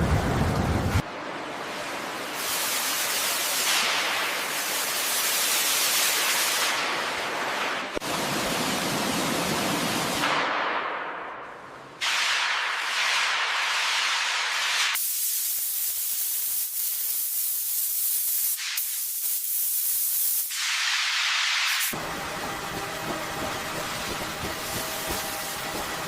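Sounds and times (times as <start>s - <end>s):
steady hissing noise: 1.0s - 10.4s, 11.8s - 22.0s.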